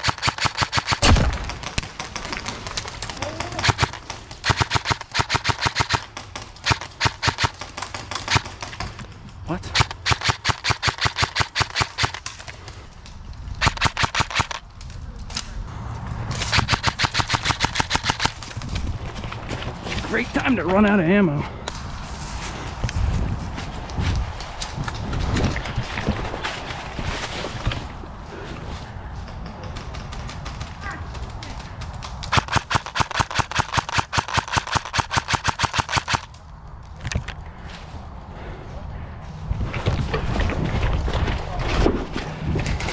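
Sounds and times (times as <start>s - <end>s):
airsoft gun firing bursts: 0.0s - 2.8s, 3.4s - 8.9s, 9.7s - 12.3s, 13.6s - 14.6s, 16.4s - 18.5s, 32.3s - 36.3s.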